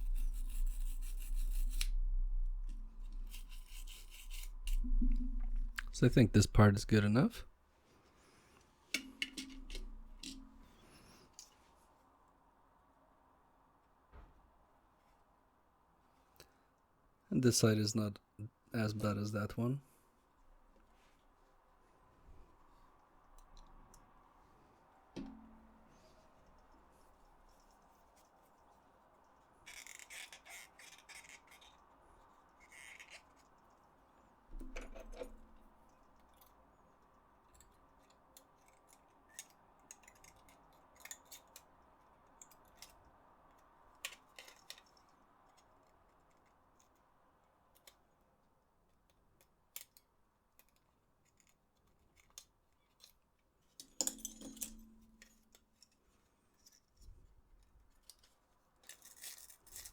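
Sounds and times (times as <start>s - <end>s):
plastic scraping or rubbing: 0.0s - 6.8s.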